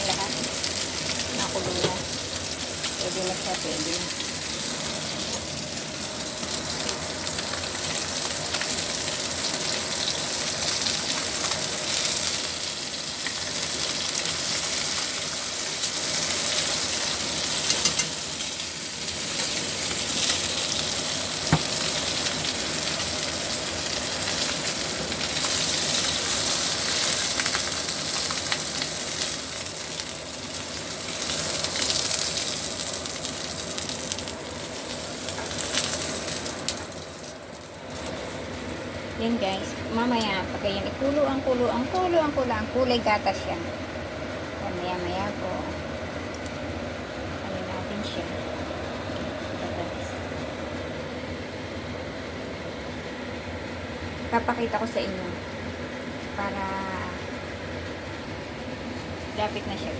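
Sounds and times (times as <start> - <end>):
soup boiling and bubbling: 0.0 - 40.1.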